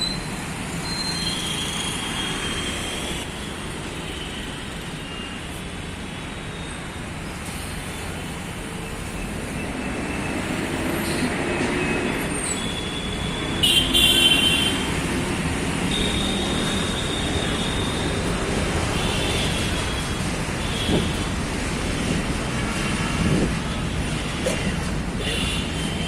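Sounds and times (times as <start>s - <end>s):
busy road traffic: 0.0s - 26.0s
vehicle horns honking: 12.6s - 15.0s, 15.8s - 18.3s, 25.2s - 26.0s.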